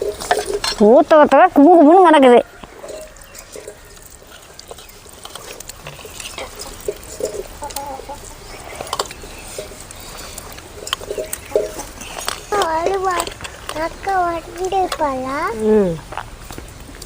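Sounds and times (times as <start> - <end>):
chickens clucking: 0.0 - 16.2.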